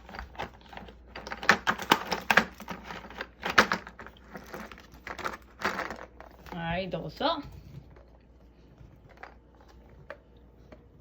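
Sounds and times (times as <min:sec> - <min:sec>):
hard objects clicking and knocking: 0:00.0 - 0:06.4.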